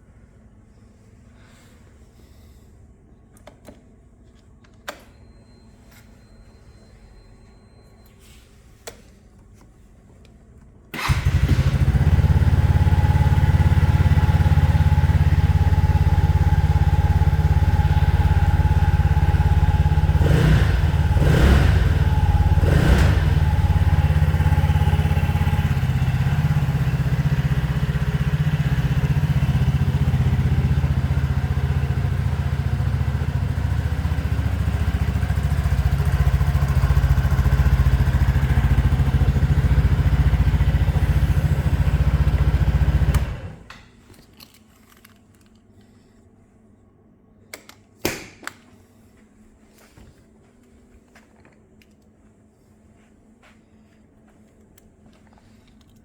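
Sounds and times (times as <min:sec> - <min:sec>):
scooter engine starting and idling: 0:10.9 - 0:43.8.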